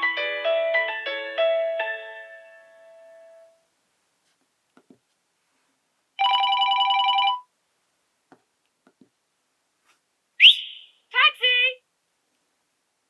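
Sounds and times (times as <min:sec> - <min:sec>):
telephone bell ringtone: 0:06.2 - 0:07.5.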